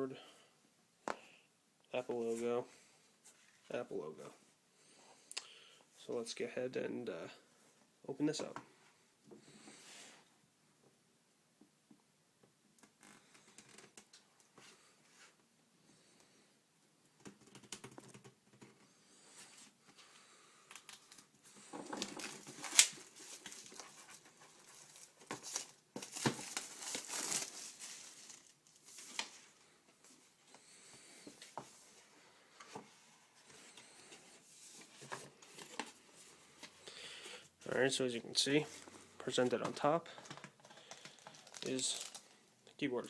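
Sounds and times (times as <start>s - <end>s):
packaging crinkling and tearing: 20.7s - 29.4s, 40.1s - 42.4s.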